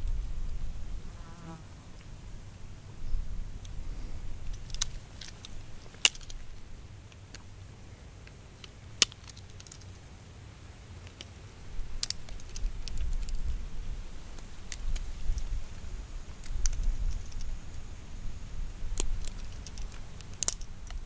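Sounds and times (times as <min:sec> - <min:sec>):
nut shells cracking: 0:04.5 - 0:06.4, 0:08.6 - 0:09.9, 0:12.0 - 0:13.4, 0:16.4 - 0:17.5, 0:18.9 - 0:21.0.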